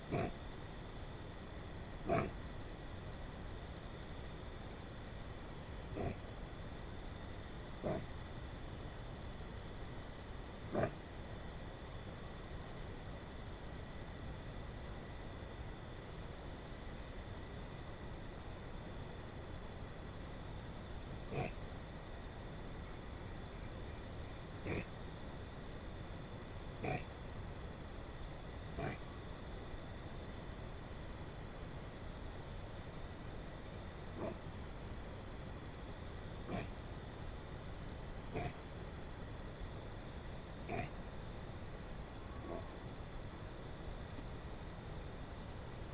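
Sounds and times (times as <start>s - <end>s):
animal snoring grunts: 0.1s - 0.4s, 2.0s - 2.4s, 5.9s - 6.3s, 7.8s - 8.1s, 10.7s - 11.0s, 21.3s - 21.6s, 24.6s - 24.9s, 26.8s - 27.1s, 28.8s - 29.1s, 34.2s - 34.4s, 36.4s - 36.8s, 38.3s - 38.6s, 40.6s - 41.0s, 42.4s - 42.7s.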